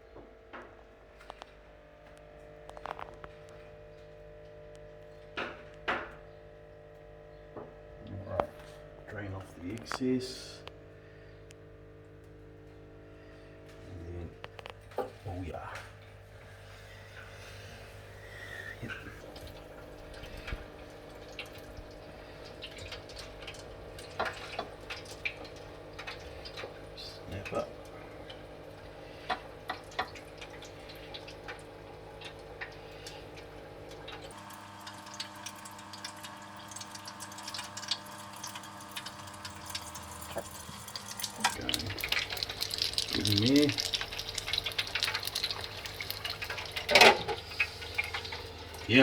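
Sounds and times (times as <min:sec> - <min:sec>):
steady hum: 0:00.8 - 0:49.0
fish frying with pops and crackles: 0:02.2 - 0:03.7, 0:14.4 - 0:49.0.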